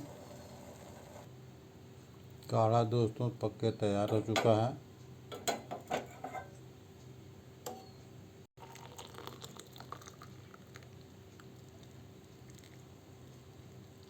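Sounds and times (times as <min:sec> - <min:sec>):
liquid bubbling in a pot: 0:08.6 - 0:14.0.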